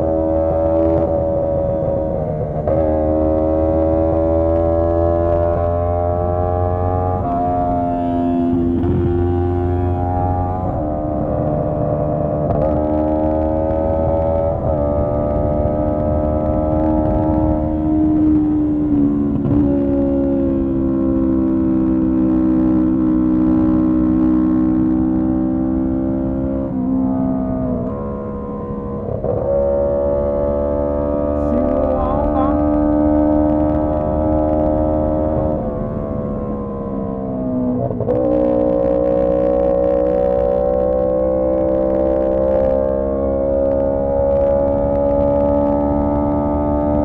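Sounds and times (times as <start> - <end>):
motorcycle engine cruising: 0.0 - 47.0
motorcycle engine running: 25.6 - 36.8.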